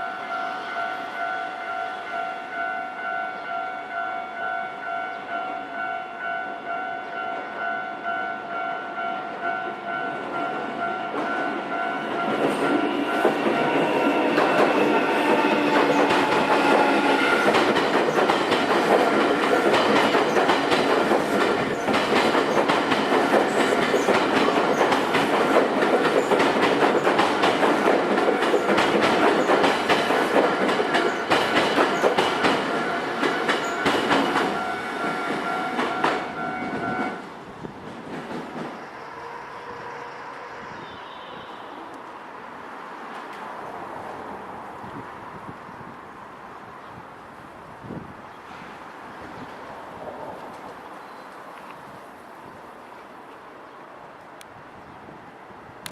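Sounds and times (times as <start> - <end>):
level-crossing warning bell: 0.0 - 16.1, 32.0 - 37.2
train wheels clattering: 11.1 - 37.2.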